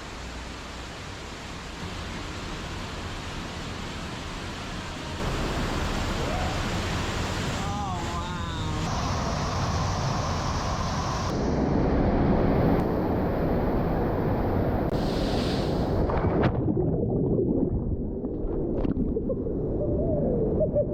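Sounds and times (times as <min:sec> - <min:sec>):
waterfall rushing: 0:00.3 - 0:11.3.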